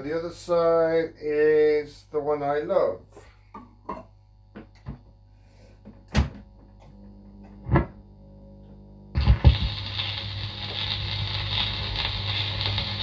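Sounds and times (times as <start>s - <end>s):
record player hum: 5.8s - 13.0s
crackly record surface hiss: 7.4s - 13.0s.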